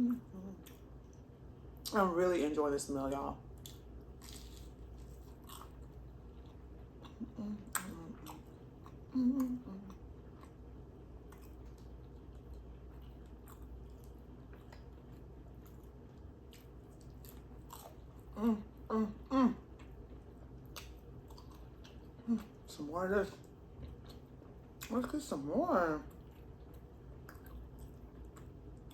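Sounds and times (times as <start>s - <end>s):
soft chewing: 0.0s - 2.0s, 3.0s - 28.9s.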